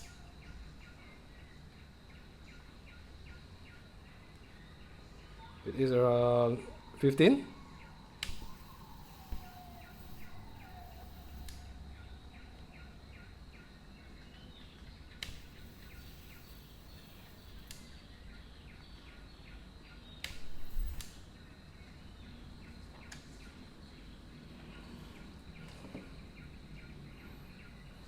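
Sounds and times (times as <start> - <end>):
sharp clicks: 8.2 - 10.4, 15.2 - 16.4, 17.5 - 17.9, 20.2 - 21.2
steady thin high tone: 8.4 - 11.9.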